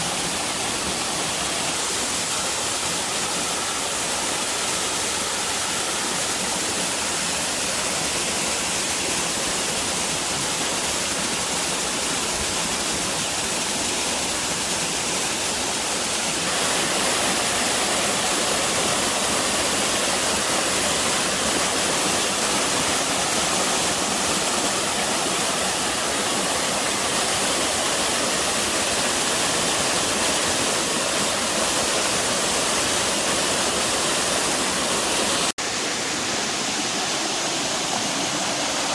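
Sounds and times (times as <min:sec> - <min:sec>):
waterfall pouring: 0:14.8 - 0:35.6.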